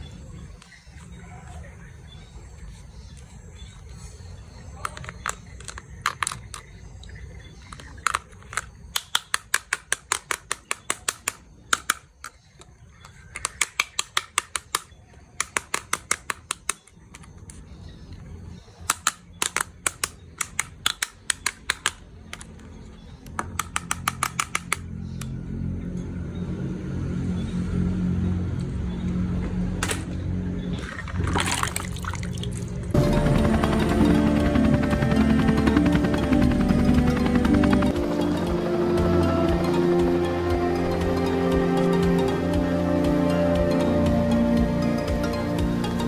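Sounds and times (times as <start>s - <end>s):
runs of sharp clicks: 18.9s - 25.3s.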